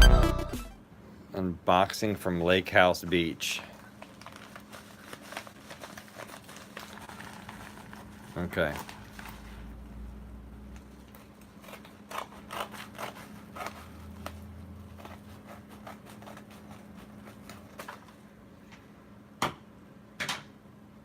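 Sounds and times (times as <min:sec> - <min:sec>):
cardboard package being opened: 0:03.8 - 0:09.8.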